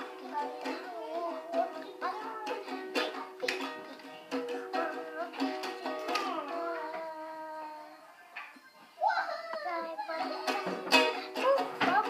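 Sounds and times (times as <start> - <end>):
strummed small stringed instrument: 0.0 - 7.6, 10.1 - 12.0.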